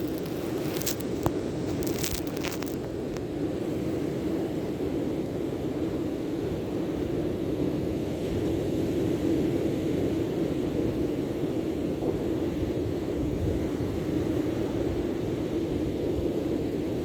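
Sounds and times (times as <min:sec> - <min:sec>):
wind: 0:00.0 - 0:17.0.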